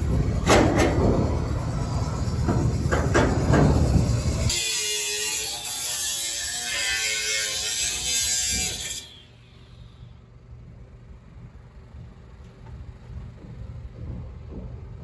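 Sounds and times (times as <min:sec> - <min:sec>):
power tool whining: 0:04.0 - 0:09.9.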